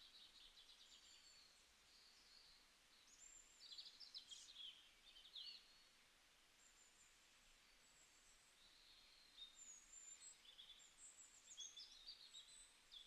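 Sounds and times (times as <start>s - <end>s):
faint steady background hiss: 0.0s - 13.0s.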